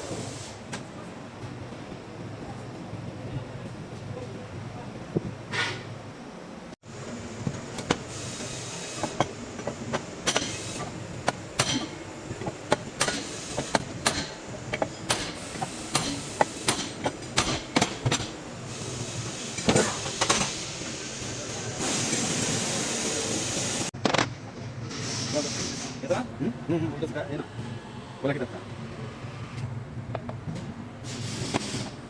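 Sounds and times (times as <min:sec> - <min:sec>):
steady hiss: 0:06.9 - 0:23.9.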